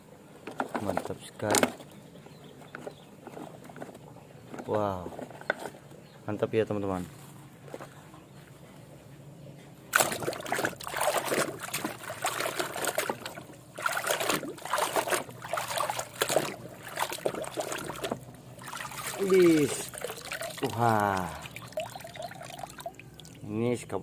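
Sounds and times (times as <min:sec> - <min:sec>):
water splashing and trickling: 0:09.9 - 0:23.8.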